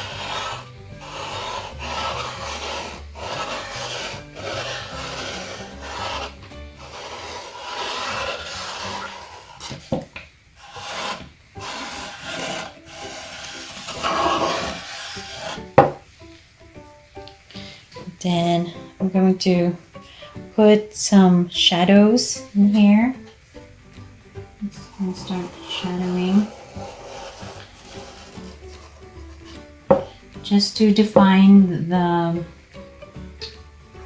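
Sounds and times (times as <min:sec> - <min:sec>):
marker scratching on wood: 0:00.0 - 0:09.8, 0:10.6 - 0:15.9, 0:25.1 - 0:29.1.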